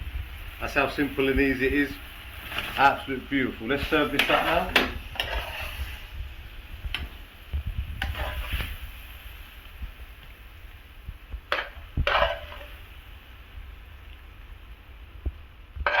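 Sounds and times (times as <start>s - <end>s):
faint sizzle: 0.0s - 16.0s
metal utensil scraping a pan: 3.8s - 6.2s, 8.0s - 8.8s, 11.5s - 12.8s.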